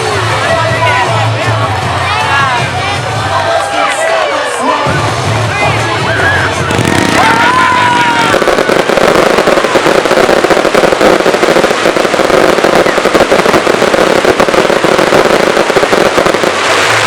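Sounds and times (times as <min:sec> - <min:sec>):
fireworks crackling pops: 0:06.6 - 0:17.0.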